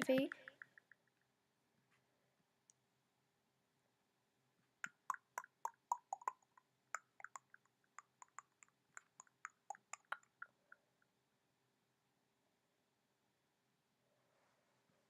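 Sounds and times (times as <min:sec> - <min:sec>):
computer clicks: 0:04.8 - 0:10.5.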